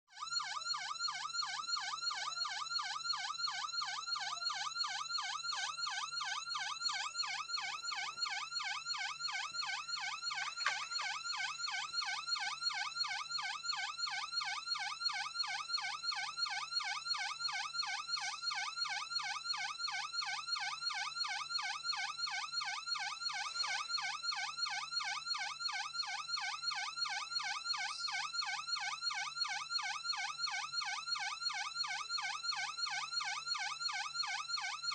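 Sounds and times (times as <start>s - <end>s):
police siren yelping: 0.4s - 14.6s, 22.0s - 29.6s.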